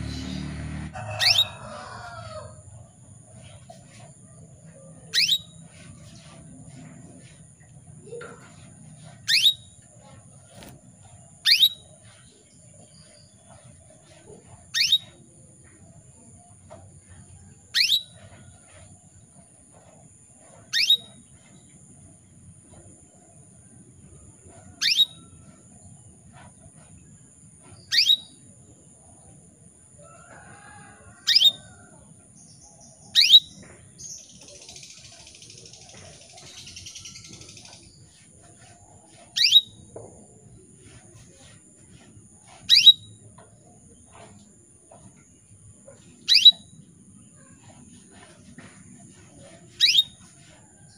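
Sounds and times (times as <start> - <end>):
canary chirps: 0.0 - 1.9, 4.7 - 15.2, 17.7 - 18.9, 20.5 - 21.6, 24.6 - 25.4, 27.7 - 28.5, 31.2 - 31.6, 32.4 - 50.9.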